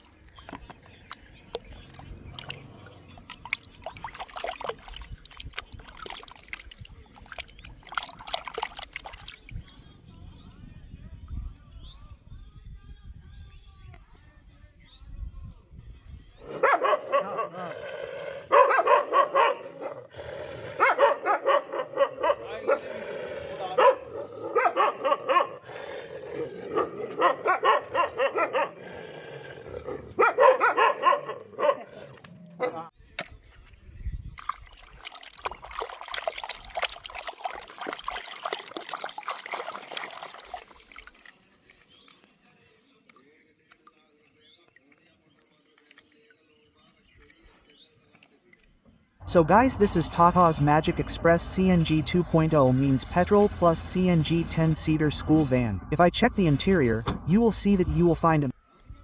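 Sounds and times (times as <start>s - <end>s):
water trickling and splashing: 0.0s - 10.0s, 33.1s - 46.6s
dog barking: 16.5s - 17.8s, 18.4s - 20.1s, 20.8s - 22.9s, 23.6s - 25.7s, 26.4s - 28.8s, 29.9s - 32.9s.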